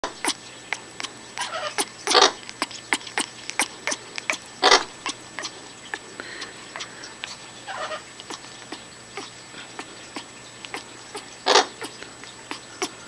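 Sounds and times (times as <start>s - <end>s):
parrot rasp: 0.0s - 13.0s
parrot clicking: 0.1s - 6.0s.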